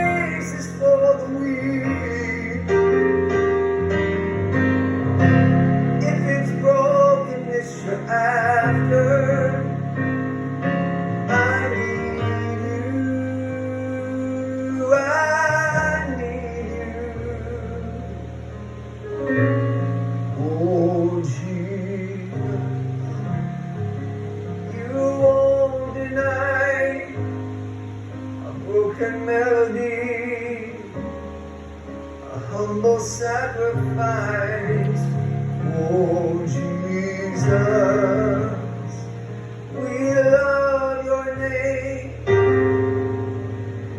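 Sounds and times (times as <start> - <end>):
person singing wordless vocal: 0.0 - 3.2, 5.8 - 10.2, 11.2 - 18.7, 20.4 - 23.9, 24.5 - 27.5, 28.3 - 31.2, 32.1 - 42.6
held keyboard chords: 0.0 - 43.9
sustained bass notes: 0.0 - 43.9.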